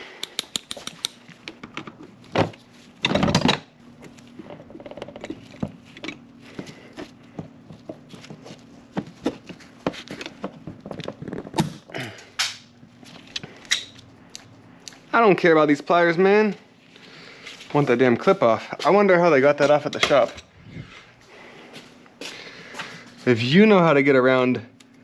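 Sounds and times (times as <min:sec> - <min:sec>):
pliers clicking and scraping metal: 0:00.2 - 0:01.2.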